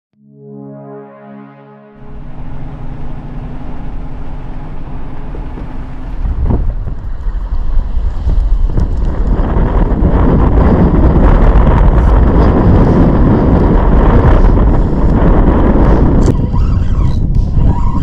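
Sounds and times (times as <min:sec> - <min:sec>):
synthesizer music: 0:00.1 - 0:05.3
wind buffeting microphone: 0:02.0 - 0:18.0.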